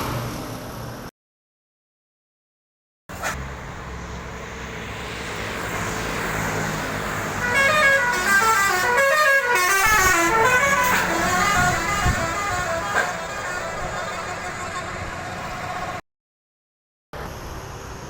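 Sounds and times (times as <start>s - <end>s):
bus engine and road noise: 0.0s - 1.1s, 3.1s - 16.0s, 17.2s - 18.0s
musical horn playing a tune: 7.4s - 15.9s.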